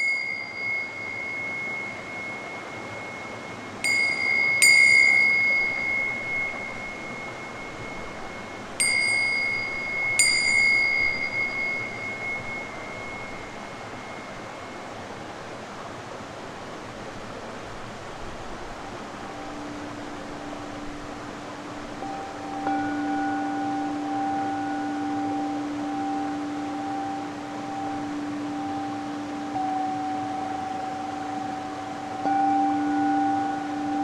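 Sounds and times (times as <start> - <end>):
small high-pitched bell ringing: 0.0 - 15.0, 19.2 - 34.0
river water rushing: 0.0 - 34.0.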